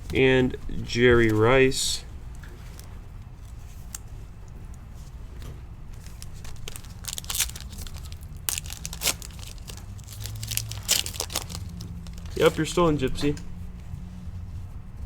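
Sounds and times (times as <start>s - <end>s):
card pack wrapper tearing and crinkling: 6.0s - 12.8s.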